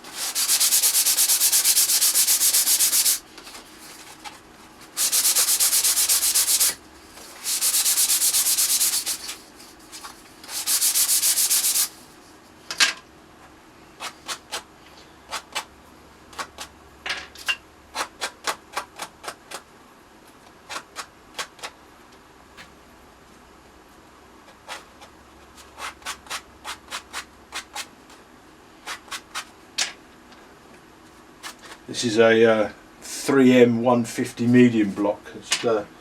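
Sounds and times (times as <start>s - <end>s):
sanding block rubbing plywood: 0.0s - 3.2s, 5.0s - 12.0s.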